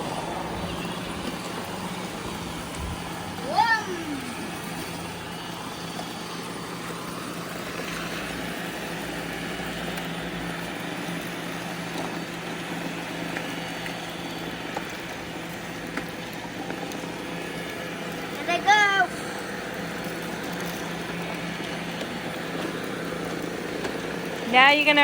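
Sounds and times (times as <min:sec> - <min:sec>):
robot vacuum cleaner running: 0:00.0 - 0:25.0.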